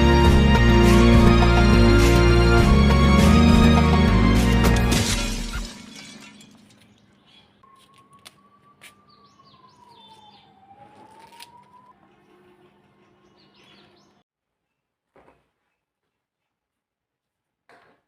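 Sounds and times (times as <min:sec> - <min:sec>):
small birds chirping: 0:06.8 - 0:14.2
distant siren-like tone: 0:07.6 - 0:12.4.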